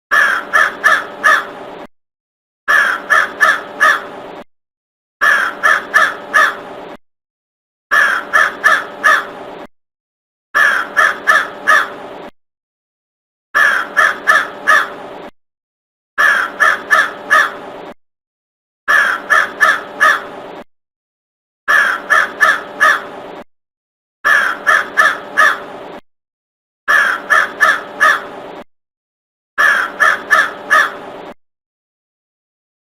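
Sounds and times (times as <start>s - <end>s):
crow cawing: 0.1s - 1.5s, 2.7s - 4.1s, 5.2s - 6.6s, 7.9s - 9.3s, 10.6s - 12.0s, 13.6s - 15.0s, 16.2s - 17.6s, 18.9s - 20.3s, 21.7s - 23.1s, 24.3s - 25.7s, 26.9s - 28.3s, 29.6s - 31.0s.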